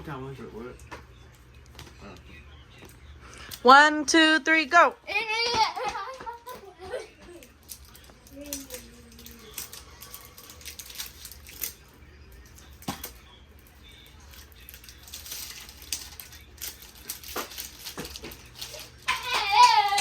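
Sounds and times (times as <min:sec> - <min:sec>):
packaging tearing and crinkling: 0:07.6 - 0:11.8, 0:14.2 - 0:20.0
high-pitched voice crying out: 0:19.1 - 0:20.0.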